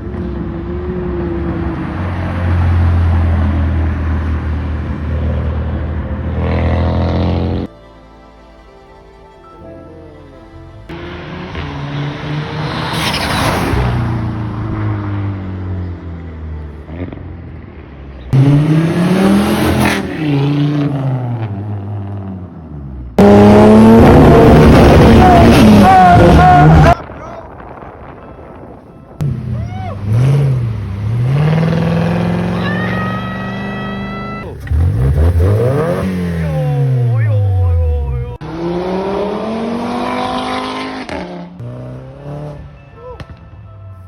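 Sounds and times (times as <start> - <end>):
car engine revving: 0.0 - 7.7, 10.9 - 27.0, 29.2 - 43.3.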